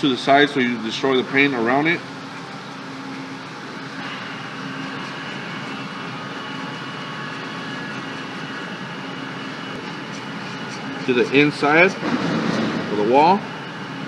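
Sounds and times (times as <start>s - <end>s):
sandpaper scraping resin: 9.7s - 12.0s.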